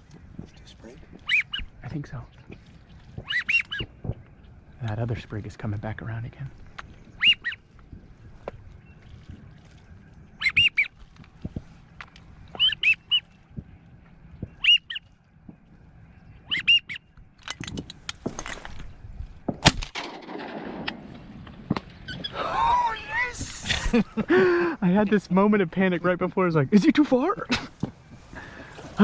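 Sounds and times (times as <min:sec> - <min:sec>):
duck whistles: 0:01.2 - 0:01.7, 0:03.2 - 0:03.9, 0:07.2 - 0:07.6, 0:10.4 - 0:10.9, 0:12.6 - 0:13.3, 0:14.6 - 0:15.0, 0:16.5 - 0:17.0
small clicks and rustles: 0:10.9 - 0:12.5, 0:17.1 - 0:19.0
shotgun blast with echo: 0:19.6 - 0:21.3.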